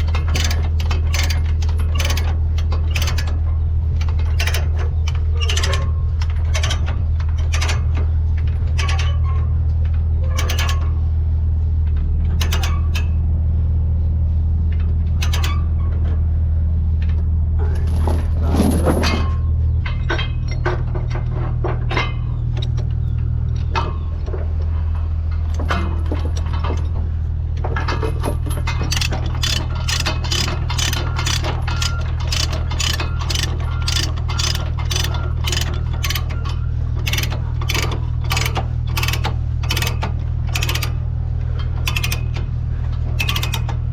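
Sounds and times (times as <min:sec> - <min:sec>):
ratchet binders clicking: 0:00.0 - 0:03.4, 0:04.3 - 0:05.8, 0:28.6 - 0:41.0, 0:41.8 - 0:42.4, 0:43.2 - 0:43.8.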